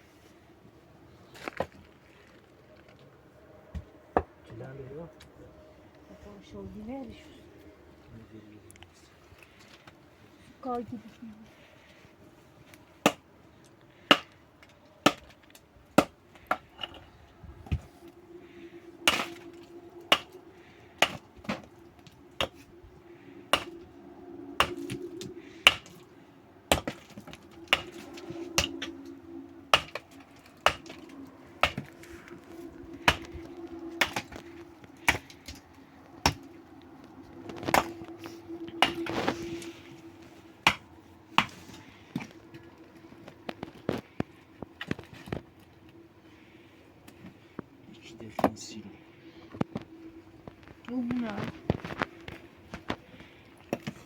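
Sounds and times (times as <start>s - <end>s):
faint steady hum: 0.0s - 54.0s
hand tool striking: 19.1s - 19.4s, 21.0s - 21.6s, 23.5s - 23.8s, 24.6s - 25.0s, 25.6s - 26.0s, 26.7s - 28.9s, 29.7s - 30.0s, 30.6s - 31.0s.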